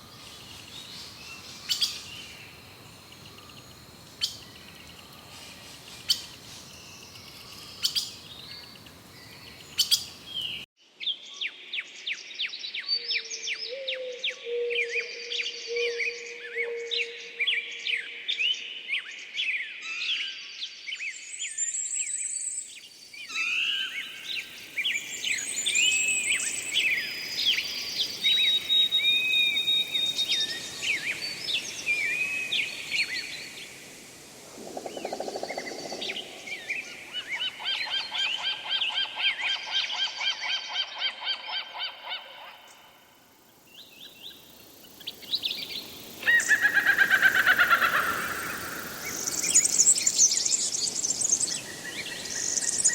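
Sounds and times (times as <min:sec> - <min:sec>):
songbirds chirping and whistling: 0:00.0 - 0:10.7, 0:21.0 - 0:34.1, 0:43.7 - 0:52.9
loud falling bird calls: 0:46.2 - 0:50.2.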